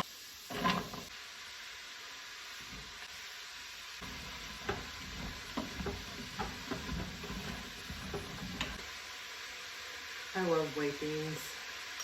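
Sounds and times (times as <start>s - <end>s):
vegetables sizzling in a pot: 0.0s - 12.0s
spoon scraping and knocking pot: 0.5s - 1.1s, 4.0s - 8.8s.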